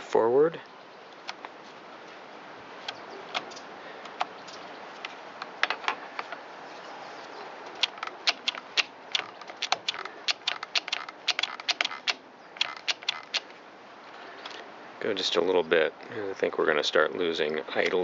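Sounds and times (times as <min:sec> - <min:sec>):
small clicks of hand tool work: 0:07.8 - 0:13.5.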